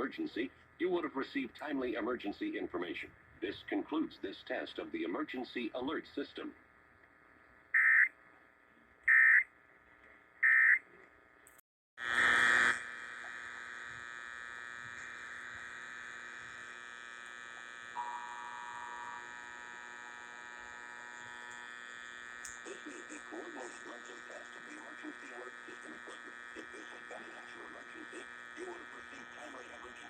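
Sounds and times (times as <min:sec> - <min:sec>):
electrical buzzing hum: 0:12.0 - 0:30.0.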